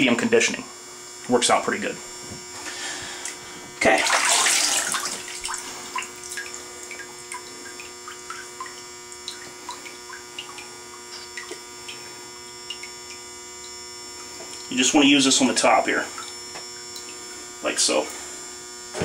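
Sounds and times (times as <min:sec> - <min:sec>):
electrical hum: 0:00.0 - 0:19.0
water drips in a bathtub: 0:04.2 - 0:14.7, 0:16.2 - 0:17.3.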